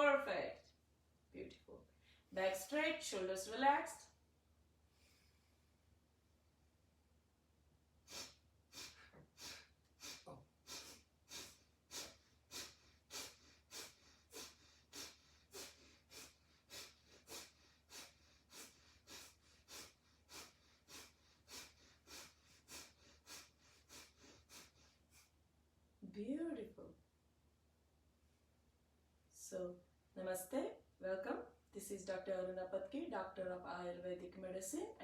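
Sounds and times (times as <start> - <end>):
forceful nasal exhalations: 8.1 - 25.3.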